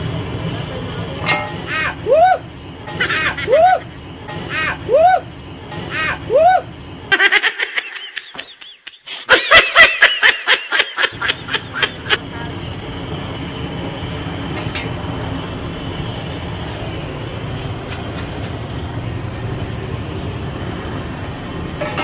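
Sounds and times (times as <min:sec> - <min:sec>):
steady rumbling noise: 0:00.0 - 0:07.2, 0:11.1 - 0:22.0
person laughing: 0:01.7 - 0:02.4, 0:03.0 - 0:05.3, 0:05.9 - 0:12.4.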